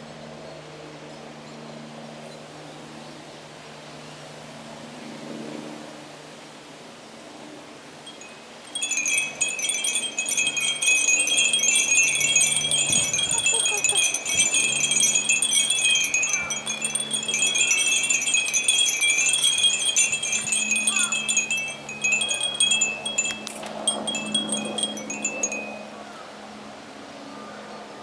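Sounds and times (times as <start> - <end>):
wind chimes tinkling: 8.0 - 26.0.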